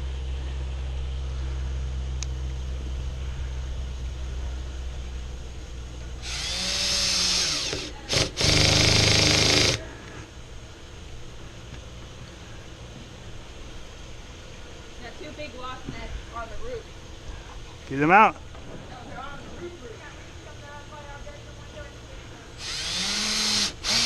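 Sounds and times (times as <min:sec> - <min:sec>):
steady low hum: 0:00.0 - 0:24.0
power drill driving screws: 0:06.2 - 0:09.8, 0:22.6 - 0:24.0.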